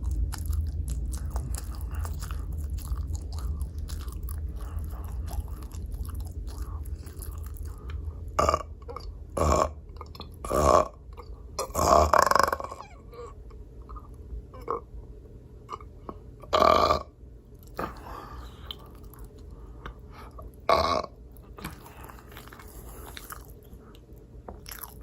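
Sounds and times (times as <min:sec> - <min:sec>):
person chewing with wet bites: 0:00.0 - 0:12.4, 0:17.5 - 0:20.6, 0:21.2 - 0:25.0
person burping loudly: 0:08.4 - 0:09.8, 0:11.6 - 0:12.9, 0:16.5 - 0:17.1, 0:20.7 - 0:21.2.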